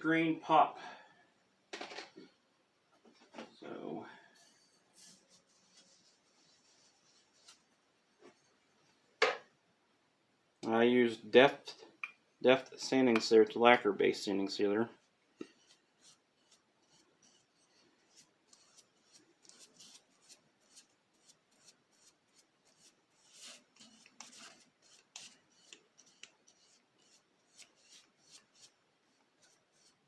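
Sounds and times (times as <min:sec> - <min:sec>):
scratchy rubbing on wood: 0:04.4 - 0:07.7, 0:15.6 - 0:28.8.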